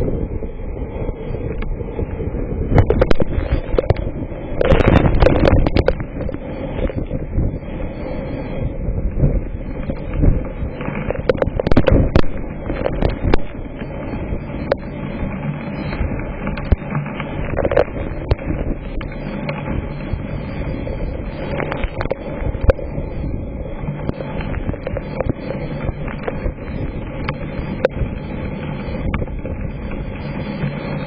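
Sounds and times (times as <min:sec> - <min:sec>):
wind gusting over microphone: 0:00.0 - 0:31.0
hailstones cracking: 0:02.8 - 0:07.0, 0:09.8 - 0:20.3.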